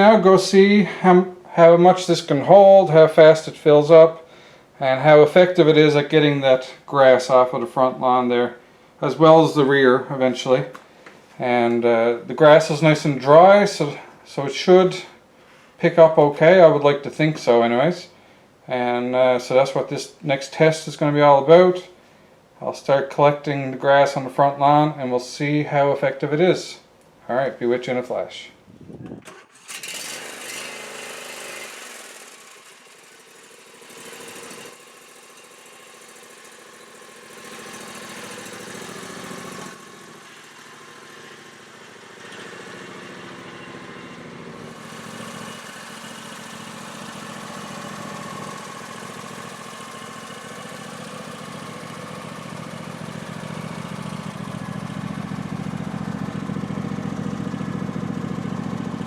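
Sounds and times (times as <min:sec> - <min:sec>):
lawn tractor engine running: 0:00.0 - 0:04.2, 0:29.0 - 0:59.0.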